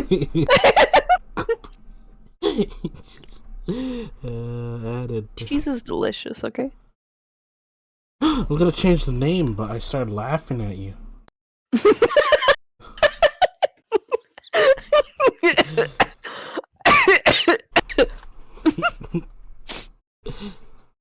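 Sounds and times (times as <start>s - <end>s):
person laughing hard: 0.0s - 1.7s, 11.8s - 16.7s, 18.6s - 19.3s.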